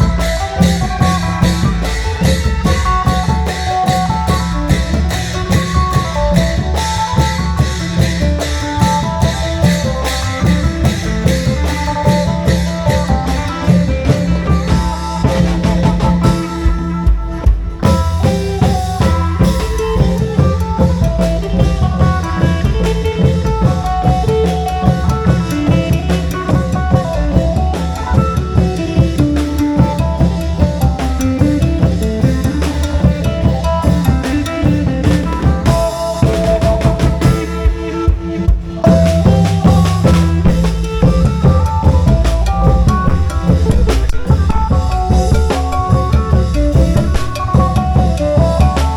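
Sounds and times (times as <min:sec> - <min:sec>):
fast drum beat: 0:00.0 - 0:48.9
melody line: 0:38.9 - 0:48.9.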